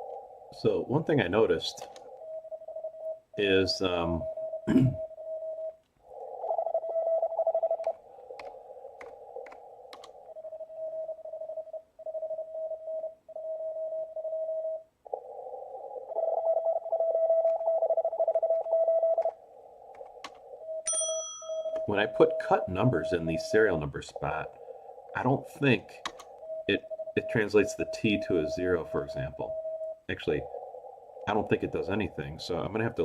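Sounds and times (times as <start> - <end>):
sharp clicks: 7.8 - 10.2, 26.0 - 26.4
morse code tone: 16.1 - 19.4, 20.0 - 30.6
radio band hiss: 21.8 - 26.0, 26.6 - 33.0.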